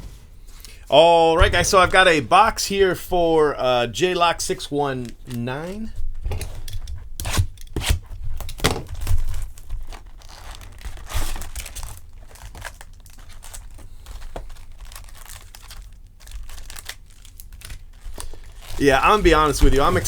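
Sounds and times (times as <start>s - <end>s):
packaging ripping: 7.2s - 20.0s
wrapper crinkling: 8.9s - 20.0s.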